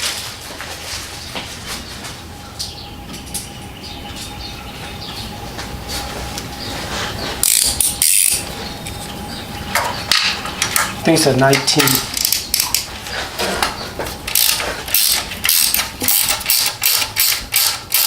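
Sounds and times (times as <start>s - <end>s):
scraping rustle: 0.0s - 2.4s, 5.6s - 11.0s, 11.7s - 16.8s
ratchet clicking: 7.4s - 8.4s, 11.8s - 12.8s, 14.3s - 18.0s.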